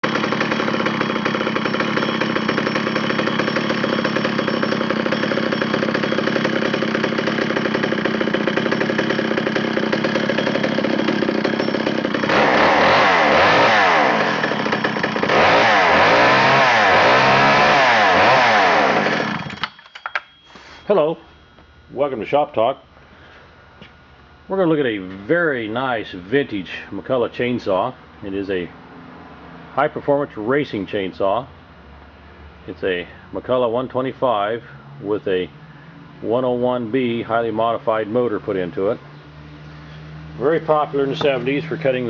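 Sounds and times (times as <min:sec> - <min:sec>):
chainsaw engine revving: 0:00.0 - 0:19.7, 0:39.6 - 0:42.0.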